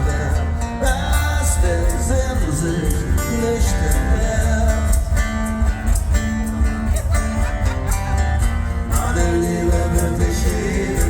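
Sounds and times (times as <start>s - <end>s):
person singing: 0.0s - 5.2s, 8.9s - 11.0s
live band music: 0.0s - 11.0s.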